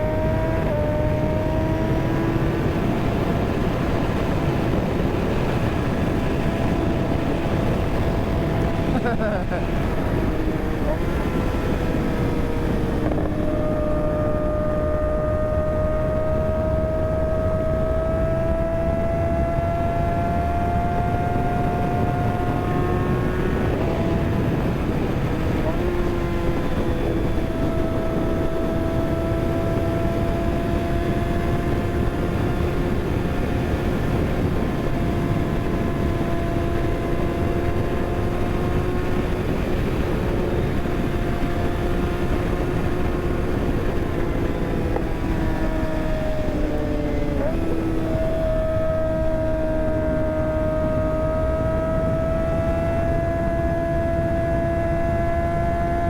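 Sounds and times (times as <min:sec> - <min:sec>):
motorcycle engine running: 0:00.0 - 0:56.0
wind rush on microphone: 0:00.0 - 0:56.0.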